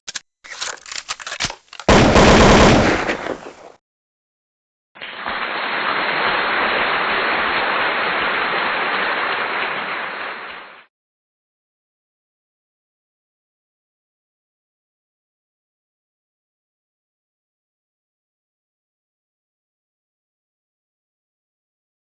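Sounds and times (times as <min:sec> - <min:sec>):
sharp cracks: 0:00.1 - 0:03.8
loud burst: 0:01.9 - 0:03.4.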